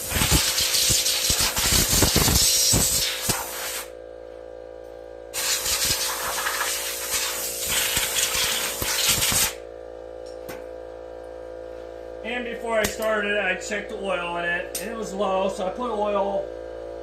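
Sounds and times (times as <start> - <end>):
compressed air hissing: 0.0 - 3.9, 5.4 - 9.6
steady hum: 0.0 - 17.0.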